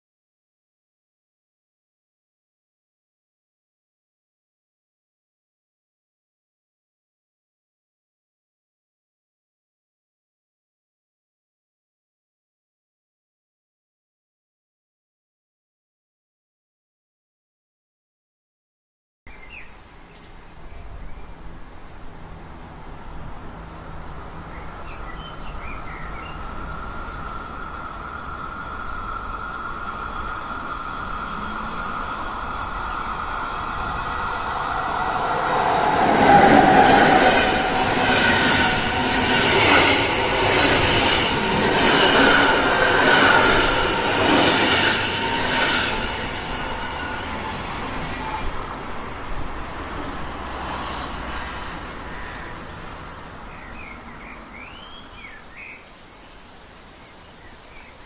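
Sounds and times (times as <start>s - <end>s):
train whine: 25.5s - 53.4s.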